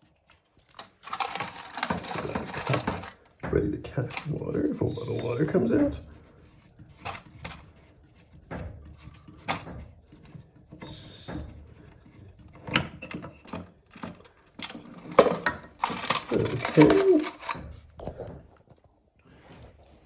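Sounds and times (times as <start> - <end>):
clicks and light knocks: 6.8 - 18.9.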